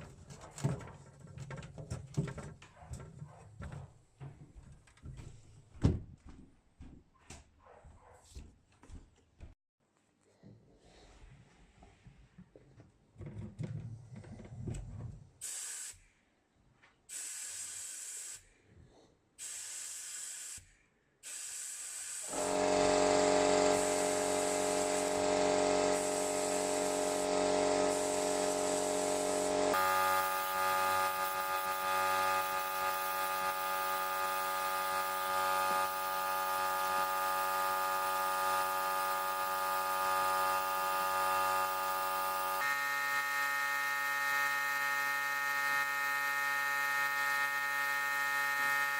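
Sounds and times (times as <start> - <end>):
short hissing bursts: 15.4 - 16.2, 17.1 - 18.6, 19.4 - 22.3
small power tool motor running: 22.1 - 48.9.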